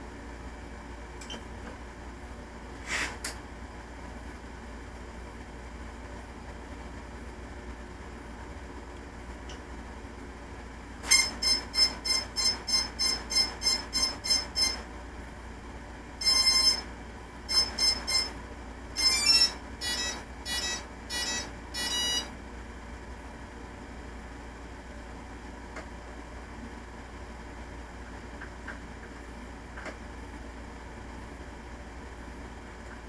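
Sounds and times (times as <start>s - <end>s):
electronic beep tones from motors: 11.0s - 14.9s, 16.2s - 16.9s, 17.5s - 18.4s, 19.0s - 22.3s.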